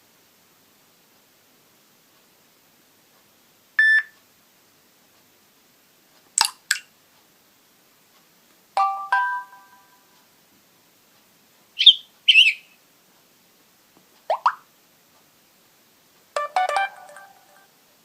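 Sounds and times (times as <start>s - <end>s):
phone alert tones: 8.8s - 10.0s, 16.4s - 17.7s.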